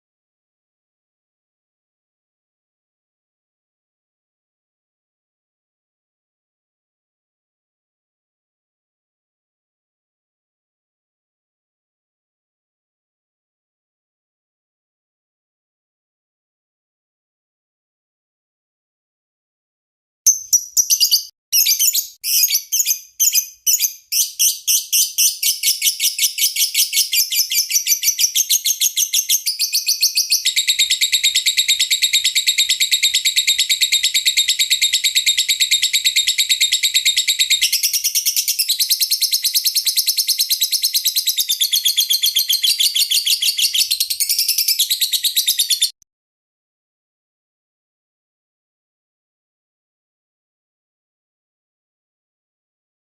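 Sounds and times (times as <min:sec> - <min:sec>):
lovebird chirping and trilling: 0:20.3 - 0:46.0.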